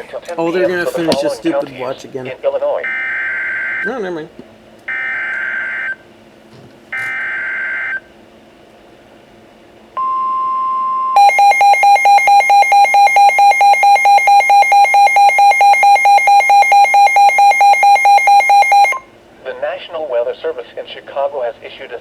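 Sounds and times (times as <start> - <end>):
pulsing electronic alarm beeps: 2.8 - 3.9, 4.9 - 6.0, 7.0 - 8.0, 10.0 - 19.1
steady alert tone: 10.0 - 19.0.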